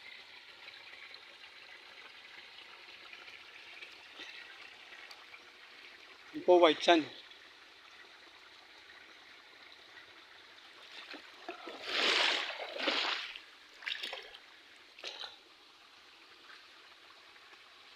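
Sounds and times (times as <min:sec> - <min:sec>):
river water trickling: 0:00.0 - 0:17.9
water rushing and splashing: 0:10.8 - 0:14.4.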